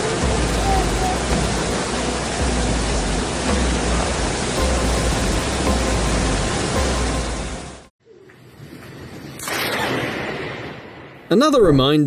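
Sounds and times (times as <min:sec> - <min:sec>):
waterfall roaring: 0:00.0 - 0:07.8.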